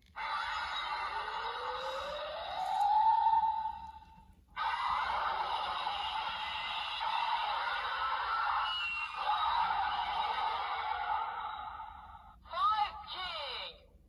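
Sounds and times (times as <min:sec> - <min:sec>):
rising electronic tone: 0:00.2 - 0:04.1
toy sword electronic sound effects: 0:00.2 - 0:09.6.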